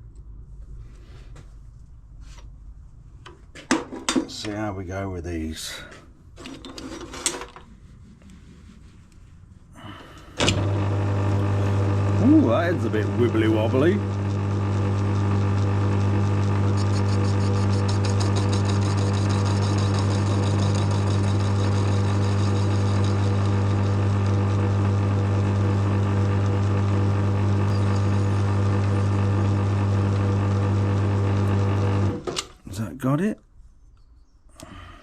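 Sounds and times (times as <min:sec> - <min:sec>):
metal lathe humming: 0:10.4 - 0:32.4.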